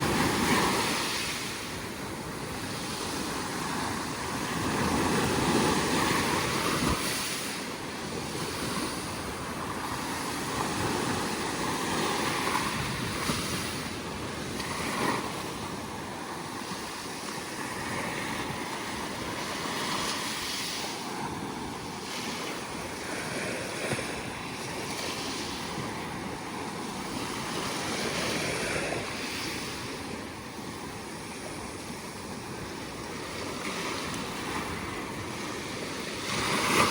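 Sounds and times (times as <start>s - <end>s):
sea waves breaking on shore: 0.0s - 36.9s
wind buffeting microphone: 0.0s - 36.9s.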